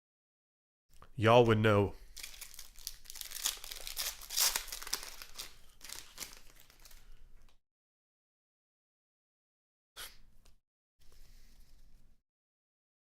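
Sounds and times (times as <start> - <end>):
wrapper crinkling: 2.1 - 7.5.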